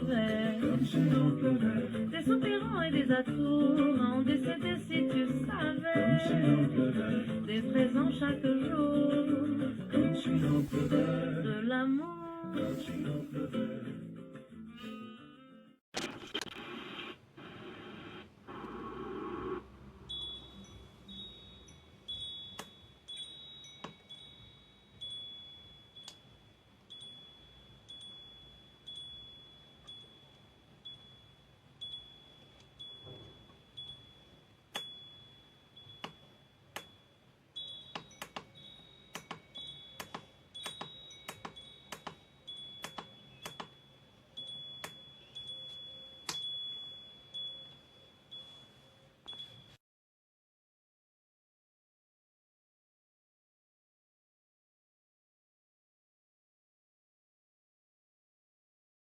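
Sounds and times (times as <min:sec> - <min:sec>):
alarm clock chime: 0:20.1 - 0:49.8.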